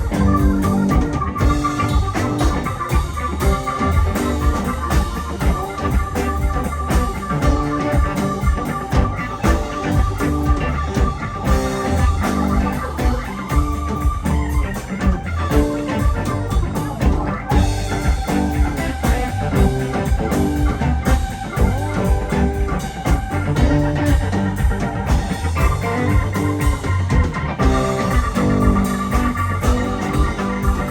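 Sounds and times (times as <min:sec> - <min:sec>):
electric guitar: 0:00.0 - 0:30.9
organ: 0:00.0 - 0:30.9
rock band playing: 0:00.0 - 0:30.9.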